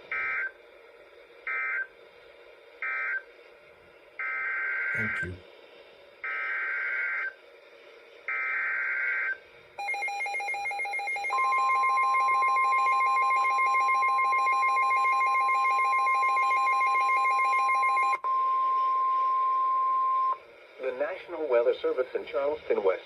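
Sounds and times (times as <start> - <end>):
steady warning alarm tone: 4.2 - 5.4, 8.3 - 18.4.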